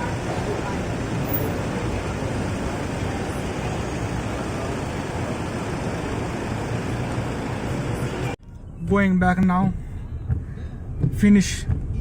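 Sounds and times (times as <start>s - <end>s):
road traffic roar: 0.0s - 12.0s.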